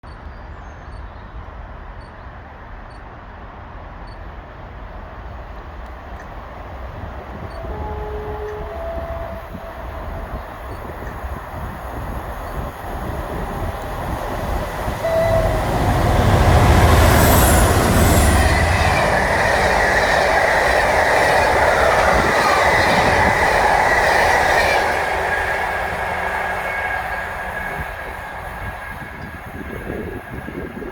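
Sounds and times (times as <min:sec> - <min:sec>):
train rumble and rail noise: 0:00.1 - 0:30.9
diesel locomotive engine: 0:01.4 - 0:30.9
wheels squealing: 0:08.0 - 0:30.9.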